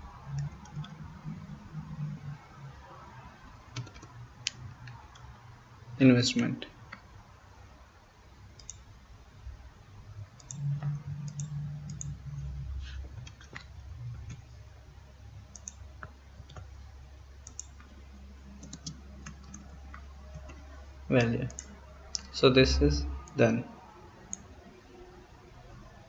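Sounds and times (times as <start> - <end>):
keyboard and mouse clicks: 0.3 - 1.0, 3.7 - 5.3, 8.6 - 8.9, 10.4 - 14.5, 15.5 - 16.7, 17.4 - 18.0, 18.6 - 22.3.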